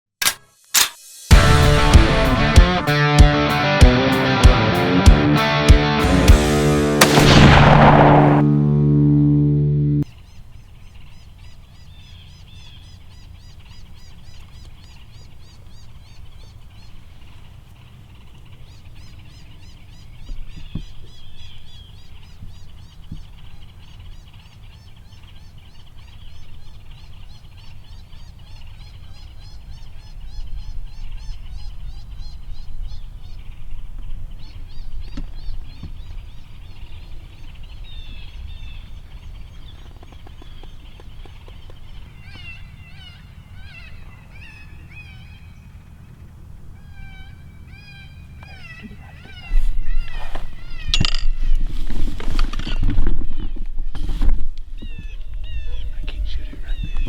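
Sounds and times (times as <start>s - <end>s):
low rumble: 6.3s - 10.0s.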